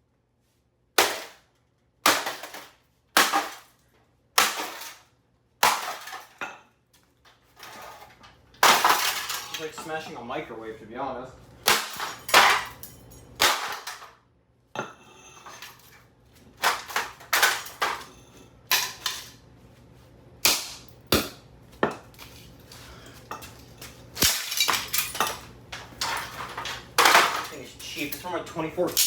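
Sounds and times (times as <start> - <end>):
axe striking metal computer case: 1.0 - 1.4, 2.1 - 3.6, 5.6 - 6.4, 11.7 - 12.7, 13.4 - 14.0, 20.4 - 21.4.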